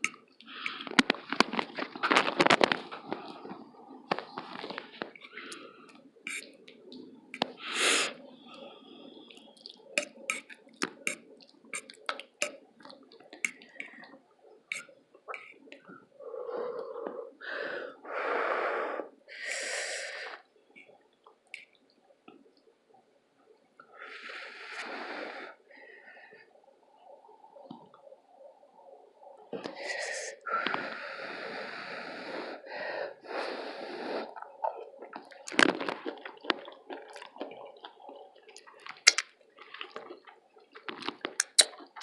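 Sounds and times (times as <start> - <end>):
mouth clicks and chewing smacks: 0.0 - 16.0, 34.3 - 42.0.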